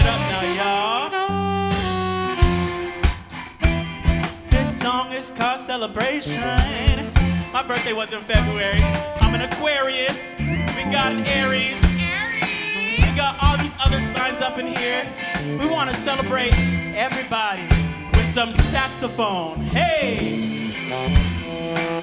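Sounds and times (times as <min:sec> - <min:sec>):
drum kit hits: 0:00.0 - 0:00.5, 0:01.7 - 0:05.0, 0:06.0 - 0:09.8, 0:19.8 - 0:22.0
live band playing: 0:00.0 - 0:22.0
sliding lead melody: 0:00.0 - 0:22.0.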